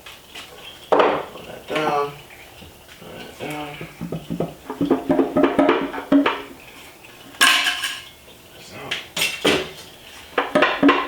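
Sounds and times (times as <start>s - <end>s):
sharp knocks of parts set down: 7.4s - 8.0s
metal tools clinking: 7.4s - 8.1s.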